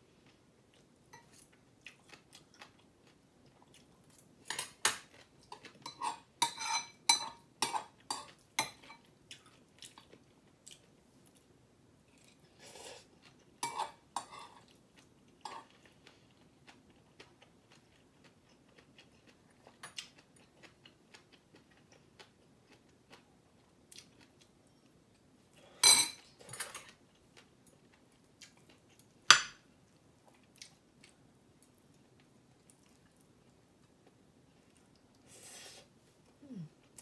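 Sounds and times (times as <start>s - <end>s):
quiet chewing: 0.1s - 4.3s, 14.3s - 25.3s, 31.9s - 37.0s
utensils clinking against dish: 4.5s - 9.0s.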